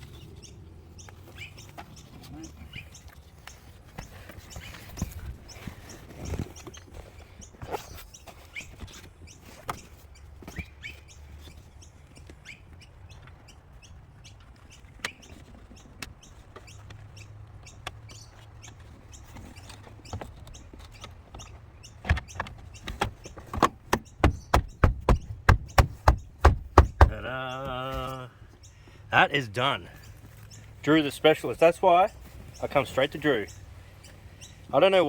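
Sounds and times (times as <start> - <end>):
sharp knocks on car trim: 22.0 - 27.3.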